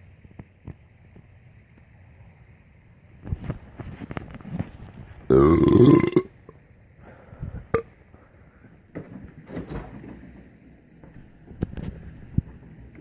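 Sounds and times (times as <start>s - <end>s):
loud pitched belch: 5.3s - 6.4s.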